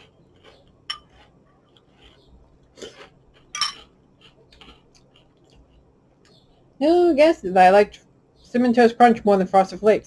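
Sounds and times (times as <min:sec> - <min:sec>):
metal spoon clinking on bowl: 0:00.9 - 0:01.2, 0:03.6 - 0:03.9.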